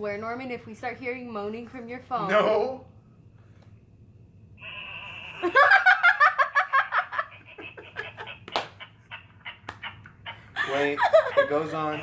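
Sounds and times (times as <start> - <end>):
people laughing: 5.4 - 12.0.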